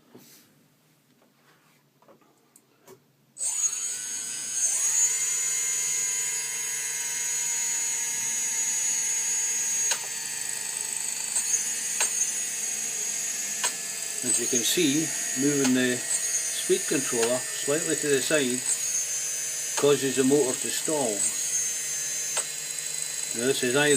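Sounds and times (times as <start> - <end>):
quadcopter motors whining: 3.4 - 23.9
sharp click: 11.4 - 12.2, 13.6 - 13.8, 22.3 - 22.5.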